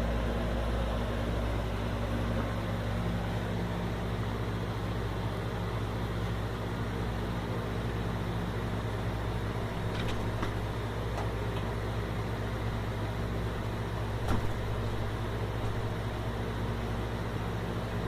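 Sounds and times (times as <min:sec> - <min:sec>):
low hum with faint hiss: 0:00.0 - 0:18.0.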